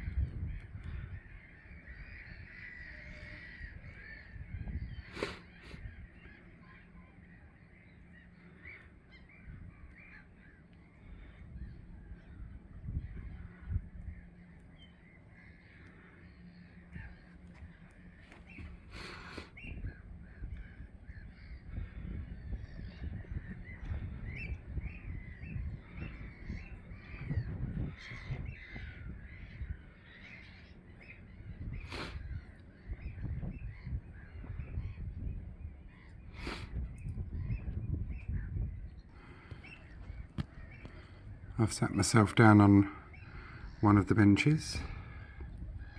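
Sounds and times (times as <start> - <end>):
gulls calling: 0.8 - 22.2, 39.1 - 45.9.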